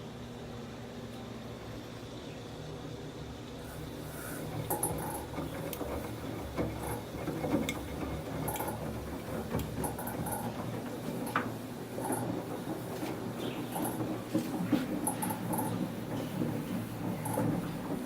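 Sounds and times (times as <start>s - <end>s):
washing machine drum hum: 3.6s - 18.0s.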